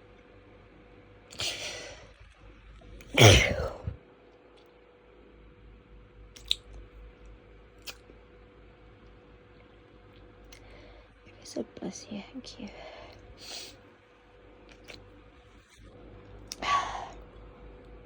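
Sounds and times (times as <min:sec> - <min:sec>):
person sneezing: 0:01.3 - 0:02.0, 0:03.1 - 0:04.0.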